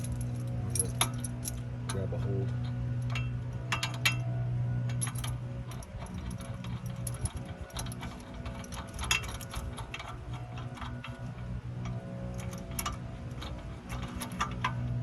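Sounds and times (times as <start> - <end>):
hand tools clinking on metal: 0.0 - 4.2
steady low hum: 0.0 - 15.0.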